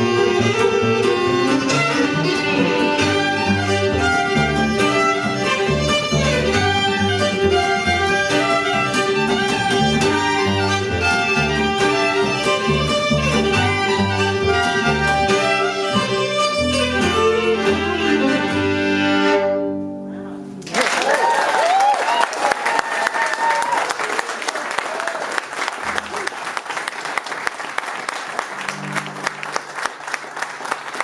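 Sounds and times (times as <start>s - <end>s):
string band playing fiddle tune: 0.0s - 20.0s, 28.4s - 29.9s.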